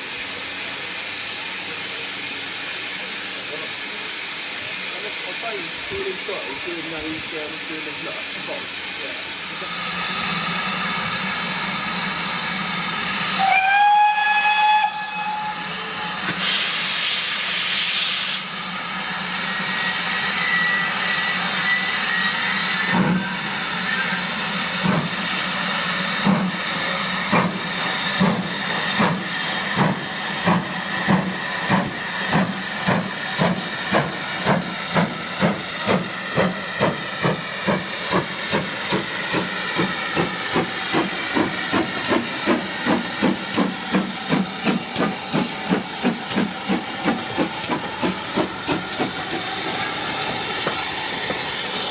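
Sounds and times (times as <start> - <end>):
burst of steam: 0.0 - 51.9
steady hiss of steam: 0.0 - 51.9
steam locomotive whistle: 13.2 - 18.5.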